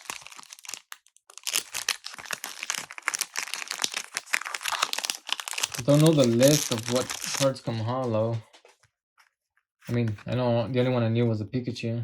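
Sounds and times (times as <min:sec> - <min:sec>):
foil wrapper crinkling: 0:00.0 - 0:08.0.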